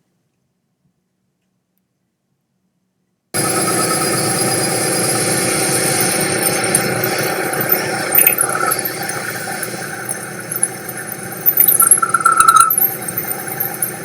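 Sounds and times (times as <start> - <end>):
milling machine cutting metal: 3.4 - 14.0.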